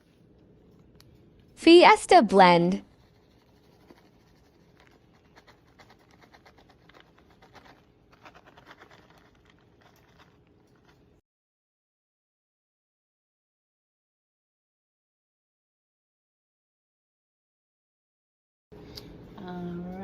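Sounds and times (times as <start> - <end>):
light scratching and tapping: 3.1 - 11.1.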